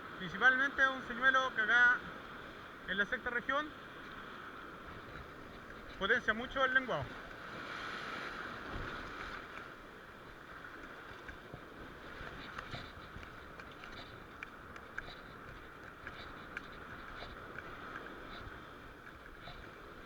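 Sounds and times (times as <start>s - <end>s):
sea waves washing on beach: 0.0s - 20.0s
faint ticks: 4.0s - 7.5s, 8.4s - 20.0s.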